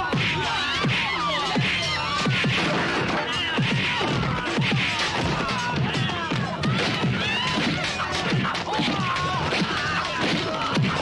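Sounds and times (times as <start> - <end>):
electronic music with heavy beat: 0.0 - 11.0
fight hits and impacts: 2.3 - 11.0.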